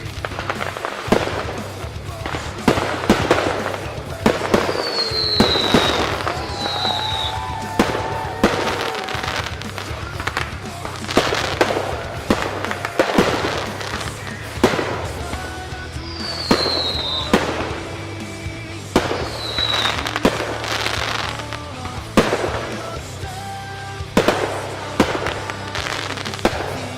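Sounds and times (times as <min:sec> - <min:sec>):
fireworks bursts and crackling bangs: 0:00.0 - 0:26.9
whistling shells falling whistles: 0:03.2 - 0:10.1, 0:16.0 - 0:17.4, 0:19.0 - 0:21.1.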